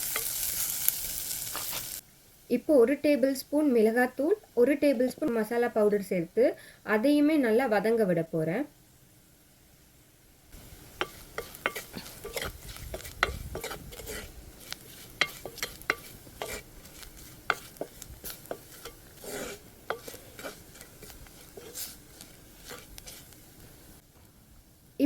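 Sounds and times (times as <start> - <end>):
faint sizzle of frying: 0.0 - 24.0
spoon scraping pan: 10.6 - 23.9.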